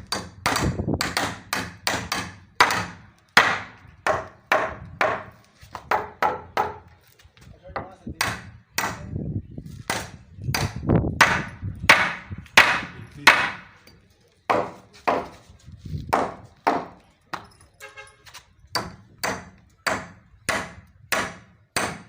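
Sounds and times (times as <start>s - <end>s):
hammer driving nails into wood: 0.0s - 6.8s, 9.9s - 13.7s, 18.7s - 22.0s.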